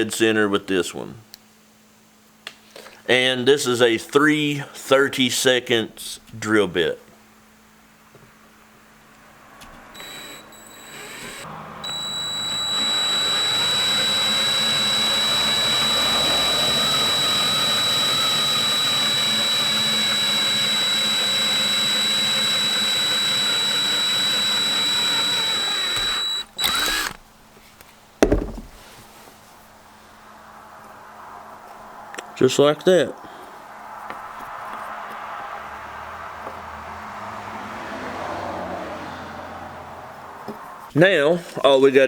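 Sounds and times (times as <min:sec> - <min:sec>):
electric drill whining: 0:10.0 - 0:27.2
knock: 0:28.2 - 0:28.8.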